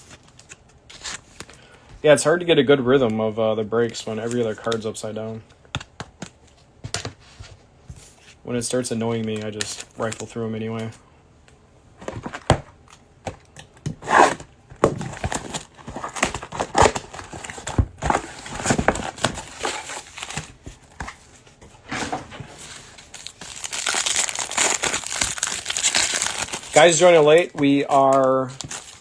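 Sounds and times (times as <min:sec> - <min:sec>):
crinkling pack wrappers: 0:22.8 - 0:29.0.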